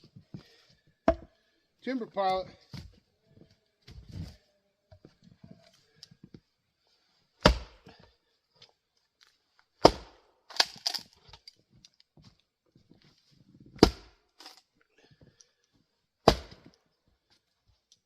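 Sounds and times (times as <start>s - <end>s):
axe chopping wood: 1.1s - 1.3s, 7.4s - 7.9s, 9.8s - 11.0s, 13.8s - 14.2s, 16.2s - 16.7s.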